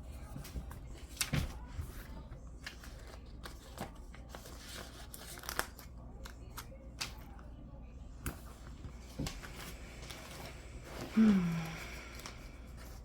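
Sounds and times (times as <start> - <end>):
paper rustling: 0.0 - 7.6.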